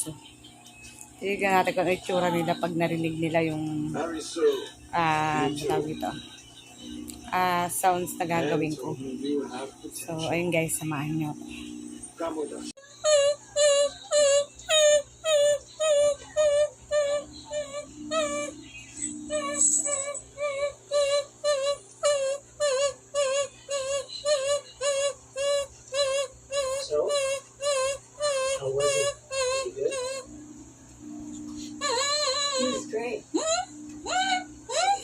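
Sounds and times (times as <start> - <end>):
high-pitched warbling calls: 12.8 - 30.3, 31.8 - 35.0.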